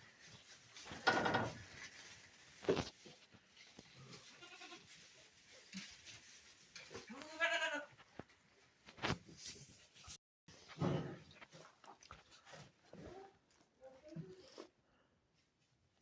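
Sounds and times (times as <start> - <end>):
goats bleating: 4.2 - 4.9, 7.1 - 7.9.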